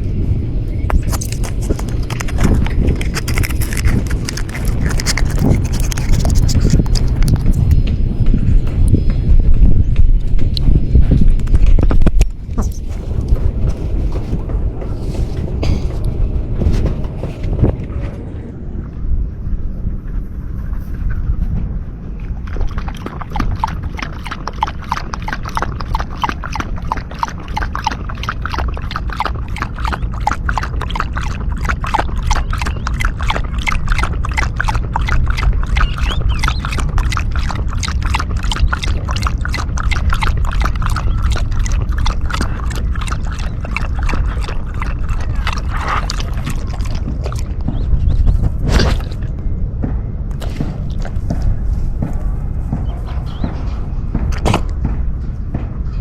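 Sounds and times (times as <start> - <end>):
dog lapping water: 0.0 - 18.1, 22.3 - 49.5, 50.3 - 55.0
steady low rumble: 0.0 - 56.0.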